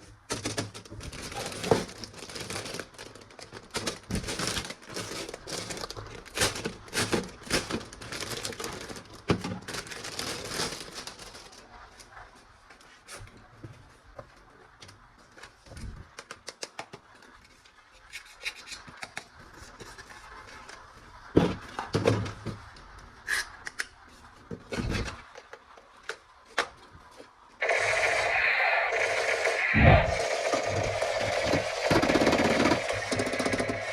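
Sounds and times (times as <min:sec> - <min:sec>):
plastic toy parts handled: 0:00.0 - 0:12.1, 0:15.4 - 0:20.9
toy gun rattling: 0:27.6 - 0:33.9.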